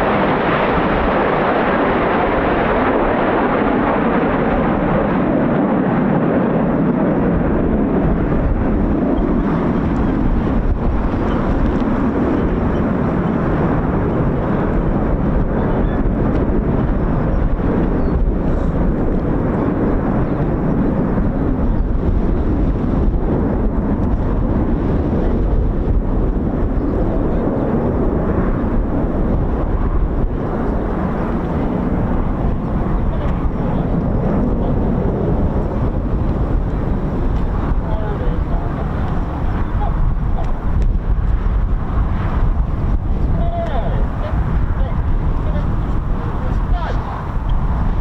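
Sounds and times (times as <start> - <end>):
jet engines: 0.0 - 48.0
wind buffeting microphone: 0.0 - 48.0.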